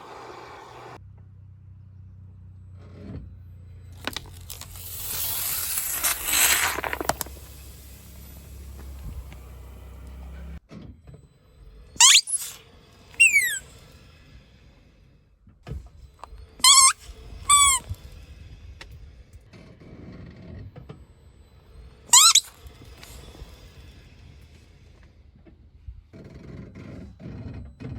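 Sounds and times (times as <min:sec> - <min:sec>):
rubber squeaky toy squeaking: 0:12.0 - 0:12.6, 0:13.2 - 0:13.6, 0:16.6 - 0:17.9, 0:22.1 - 0:23.2.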